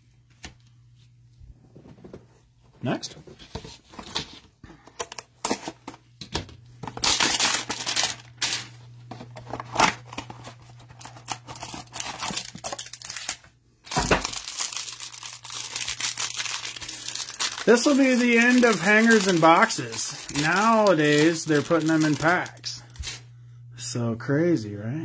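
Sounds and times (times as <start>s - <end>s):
wrapper tearing and crinkling: 6.9s - 8.8s, 9.4s - 23.2s.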